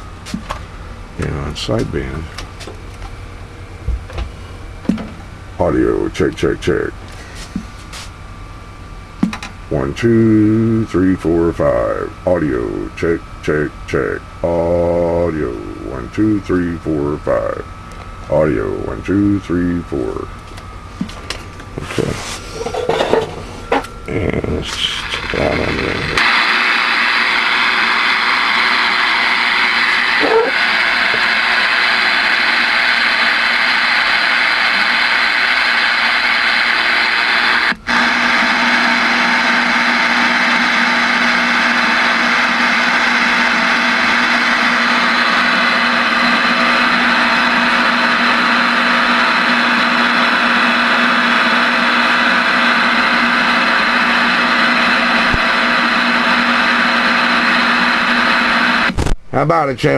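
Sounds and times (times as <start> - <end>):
low steady hum: 0.0 - 26.2
radio static hiss: 1.2 - 2.7, 5.6 - 8.2, 9.7 - 20.4, 21.7 - 38.4, 52.1 - 59.9.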